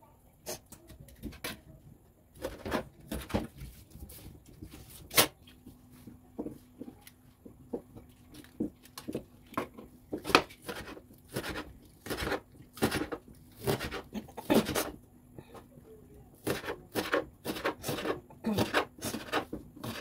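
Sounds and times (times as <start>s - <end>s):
faint steady hum: 0.0s - 20.0s
rustling and scraping: 2.4s - 12.3s.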